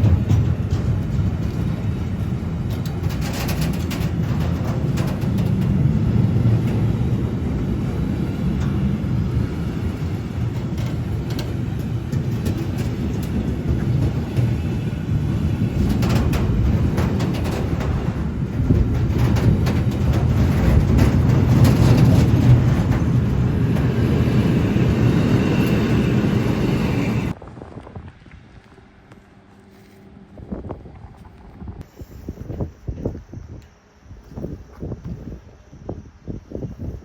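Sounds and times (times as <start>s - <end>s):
clattering bursts: 0.0s - 7.8s, 10.2s - 26.4s
train rumbling: 0.0s - 37.0s.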